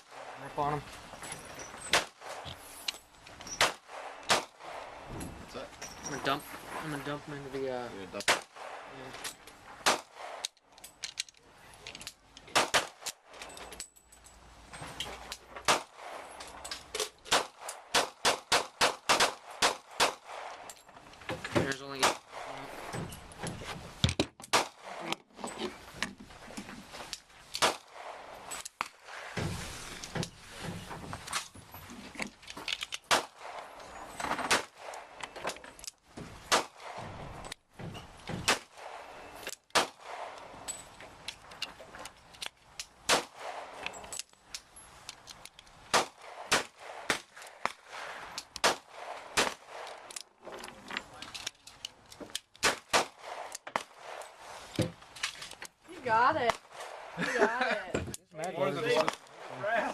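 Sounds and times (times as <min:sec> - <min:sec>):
pistol shots: 0:01.8 - 0:02.4, 0:03.5 - 0:05.0, 0:08.2 - 0:08.9, 0:09.8 - 0:10.5, 0:12.5 - 0:13.1, 0:15.6 - 0:16.2, 0:17.3 - 0:20.7, 0:22.0 - 0:22.6, 0:24.5 - 0:25.1, 0:33.0 - 0:33.8, 0:36.5 - 0:37.2, 0:38.4 - 0:40.4, 0:43.0 - 0:43.9, 0:45.9 - 0:47.8, 0:48.6 - 0:49.9, 0:52.6 - 0:54.2.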